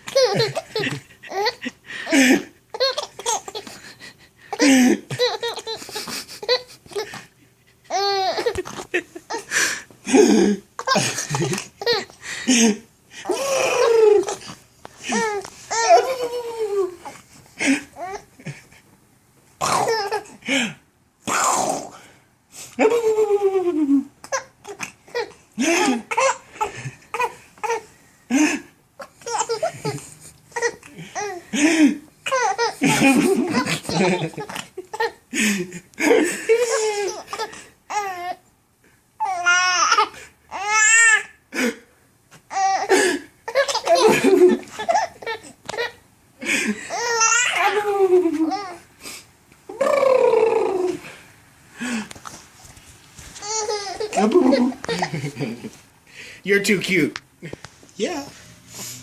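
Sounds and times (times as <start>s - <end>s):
baby laughing: 0.0s - 3.9s, 4.5s - 7.3s, 7.9s - 9.5s, 10.1s - 12.2s, 13.2s - 18.5s, 19.7s - 20.4s, 22.8s - 27.9s, 29.0s - 35.2s, 36.0s - 38.4s, 42.5s - 46.0s, 46.6s - 48.8s, 53.4s - 55.7s.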